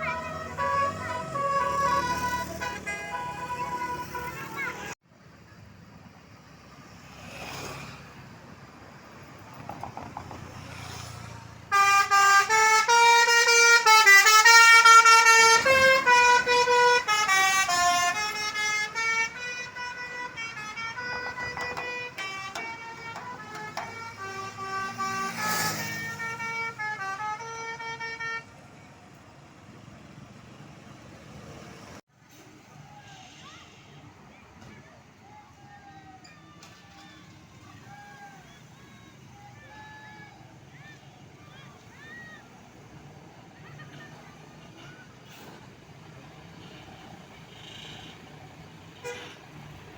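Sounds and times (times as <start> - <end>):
bus musical horn playing a tune: 0.0 - 5.0, 11.7 - 28.8, 49.0 - 49.6
low traffic noise: 0.0 - 49.9.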